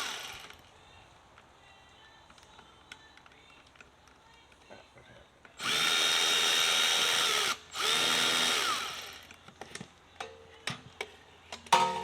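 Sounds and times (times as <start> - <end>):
power drill whining: 5.6 - 9.2.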